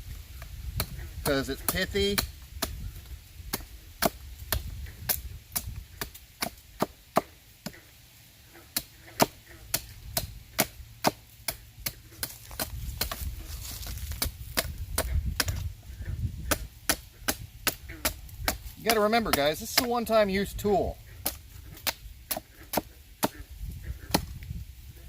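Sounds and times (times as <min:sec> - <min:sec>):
blade strikes cutting wood: 0:00.8 - 0:02.8, 0:03.5 - 0:07.8, 0:08.7 - 0:15.7, 0:16.4 - 0:20.2, 0:21.2 - 0:23.4, 0:24.0 - 0:24.4.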